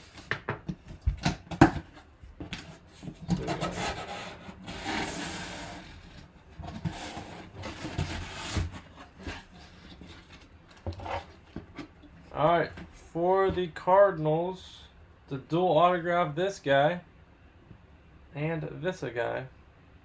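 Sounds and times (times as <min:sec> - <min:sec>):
packaging rustling and scraping: 0:01.4 - 0:13.2.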